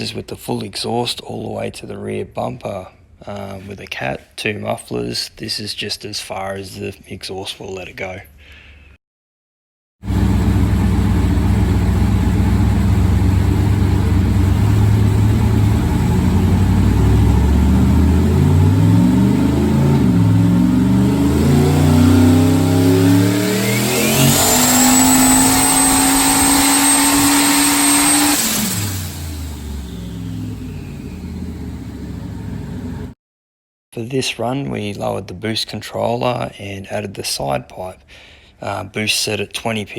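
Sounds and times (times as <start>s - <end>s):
car engine revving: 10.0s - 33.1s
high turbo whine: 10.0s - 33.2s.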